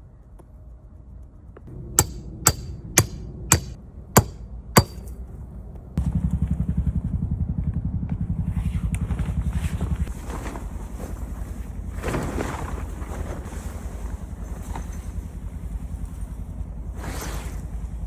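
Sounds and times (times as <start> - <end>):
pulsing low rumble: 1.7 - 12.0
ringing metallic knocks: 2.0 - 5.2.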